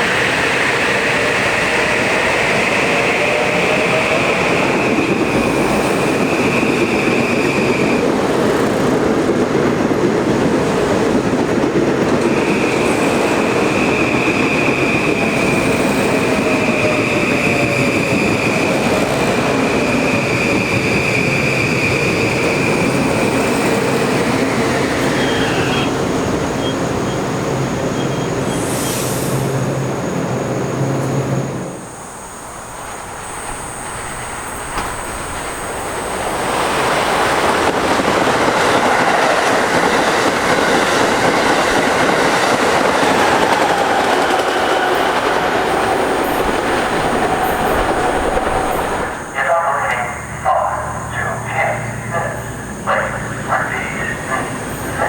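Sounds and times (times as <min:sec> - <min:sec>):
train wheels rushing on rail: 0:00.0 - 0:55.0.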